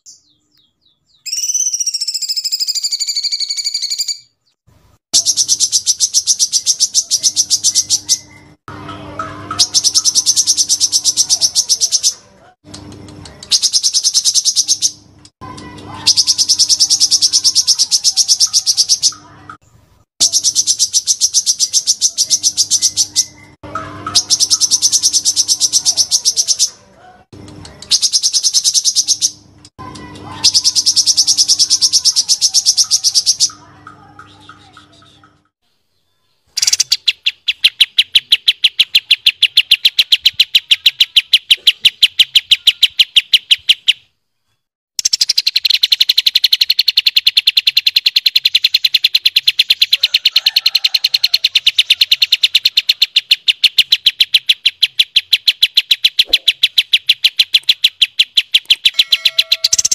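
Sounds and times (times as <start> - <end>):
songbird trilling: 0.0 - 4.3, 5.2 - 8.6, 9.4 - 12.2, 13.4 - 15.0, 15.6 - 19.3, 20.2 - 26.8, 27.8 - 29.4, 30.0 - 35.3, 36.6 - 44.0, 45.0 - 59.9
lower rolling trill: 20.2 - 35.5, 58.9 - 59.9.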